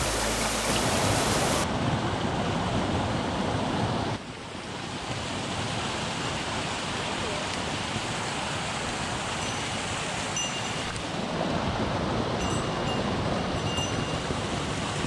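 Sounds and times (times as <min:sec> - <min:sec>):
stream water rushing: 0:00.0 - 0:01.7.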